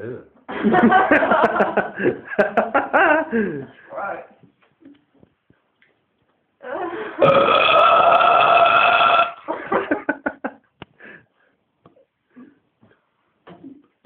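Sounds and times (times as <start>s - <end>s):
man burping: 7.2s - 9.4s.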